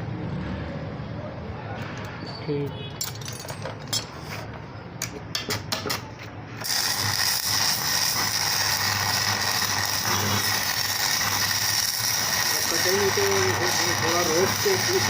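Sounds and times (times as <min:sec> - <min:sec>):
metal knocks and clinks: 0:02.9 - 0:04.2
loud machine noise with hiss: 0:06.6 - 0:15.0.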